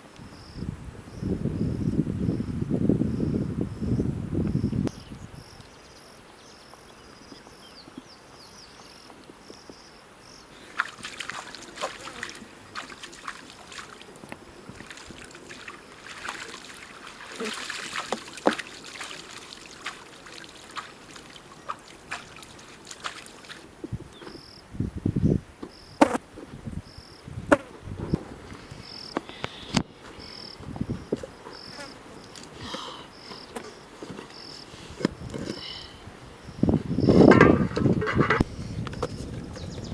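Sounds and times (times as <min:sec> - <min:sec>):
insects chirping: 0:00.2 - 0:26.2, 0:26.8 - 0:27.5, 0:28.1 - 0:37.4.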